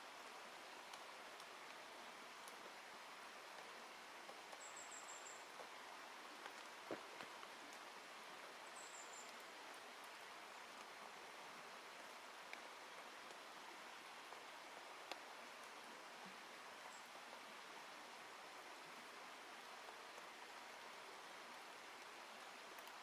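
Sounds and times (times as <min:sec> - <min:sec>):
faint steady hiss: 0:00.0 - 0:23.0.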